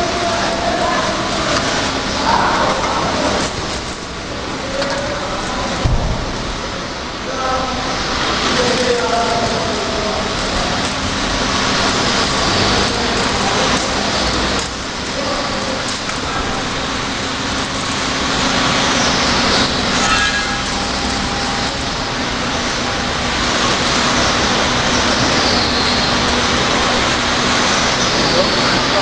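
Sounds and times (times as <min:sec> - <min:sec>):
machine noise: 0:00.0 - 0:29.0
mechanical hum: 0:00.0 - 0:29.0.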